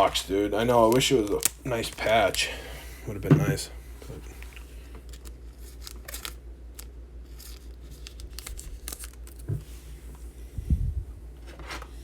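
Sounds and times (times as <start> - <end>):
packaging crinkling and tearing: 0.0 - 2.6, 4.3 - 9.5.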